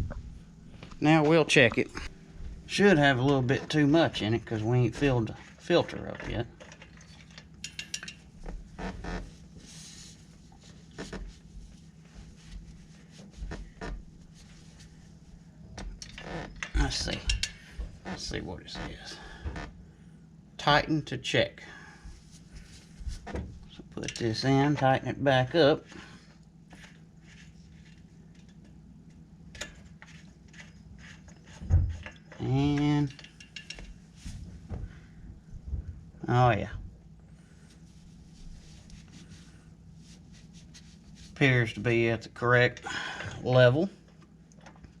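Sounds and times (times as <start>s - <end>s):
faint steady hum: 0.0s - 45.0s
soft rustle: 8.3s - 15.5s, 22.1s - 23.7s, 26.0s - 28.4s, 33.8s - 36.0s, 37.4s - 41.5s.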